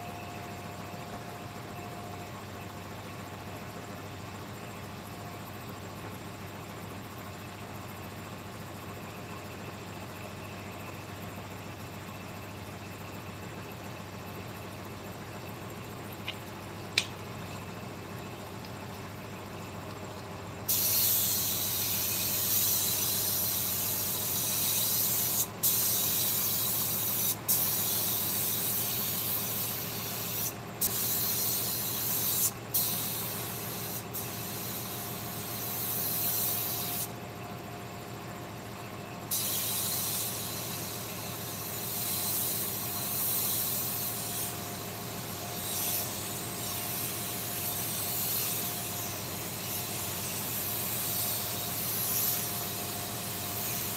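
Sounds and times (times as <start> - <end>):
low machine hum: 0.0 - 35.9
workshop tool hissing: 20.6 - 37.2, 39.3 - 53.9.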